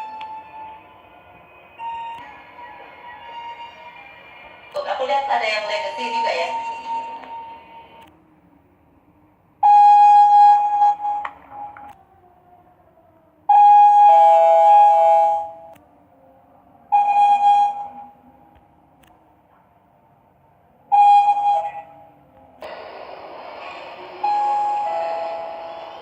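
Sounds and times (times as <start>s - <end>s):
elevator arrival chimes: 0.0s - 4.3s, 4.9s - 8.0s, 23.7s - 26.0s
steady noise: 0.0s - 9.6s, 22.1s - 26.0s.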